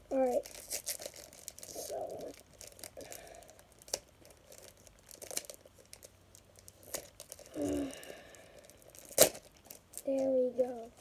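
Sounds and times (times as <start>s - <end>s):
packaging being torn open: 0.2s - 7.6s, 8.6s - 10.0s.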